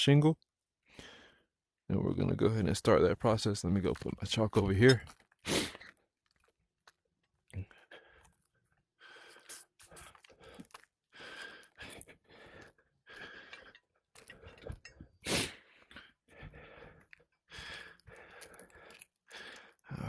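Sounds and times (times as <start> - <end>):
footsteps crunching on shingles: 3.6 - 7.5.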